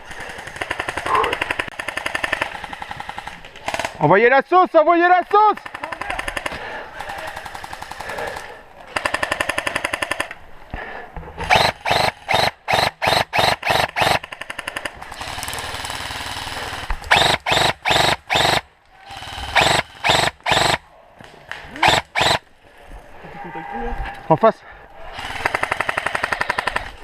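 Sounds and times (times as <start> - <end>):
airsoft gun bursts and shots: 0.0 - 4.3, 5.4 - 10.3, 11.4 - 20.8, 21.5 - 22.4, 25.1 - 27.0.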